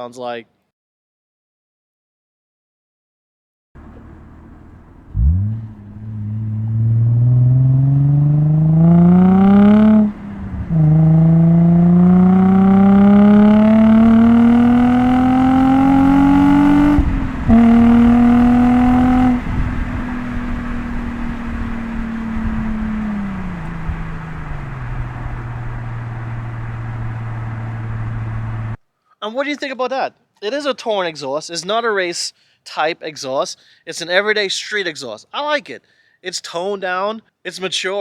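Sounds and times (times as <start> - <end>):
car engine accelerating through gears: 3.8 - 28.8.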